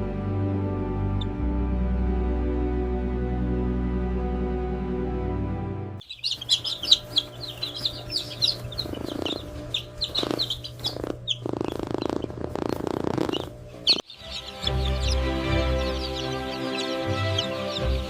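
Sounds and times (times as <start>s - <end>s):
chicks peeping: 6.0s - 18.0s
steady low hum: 6.0s - 18.0s.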